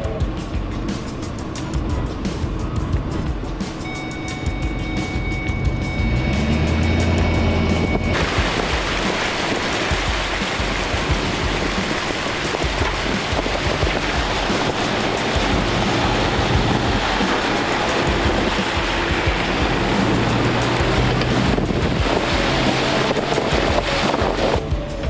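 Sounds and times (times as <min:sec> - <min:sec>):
water rushing: 0:00.0 - 0:24.7
wind buffeting microphone: 0:04.5 - 0:24.7.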